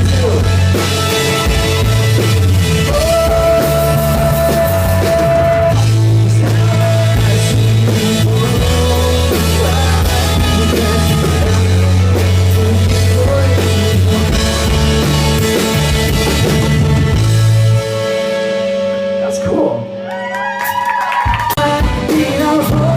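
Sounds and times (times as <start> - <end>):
drums: 0.0 - 19.9, 20.5 - 22.9
bass notes: 0.0 - 20.3, 21.3 - 22.9
live rock band playing: 0.0 - 22.9
person singing: 2.7 - 16.6, 20.6 - 22.9.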